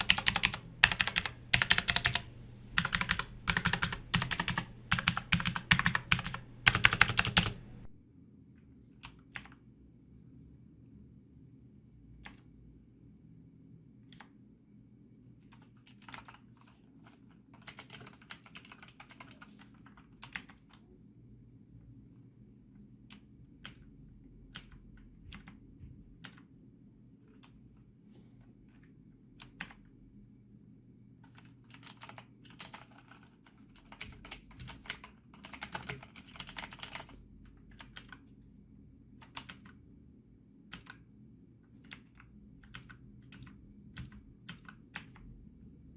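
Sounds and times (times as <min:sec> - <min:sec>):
clicky keyboard typing: 0:00.0 - 0:08.0, 0:09.0 - 0:09.6, 0:12.2 - 0:12.5, 0:15.4 - 0:16.5, 0:17.5 - 0:20.9, 0:24.5 - 0:25.6, 0:29.4 - 0:29.9, 0:31.2 - 0:38.3, 0:39.2 - 0:39.8, 0:40.7 - 0:41.0, 0:41.8 - 0:45.3.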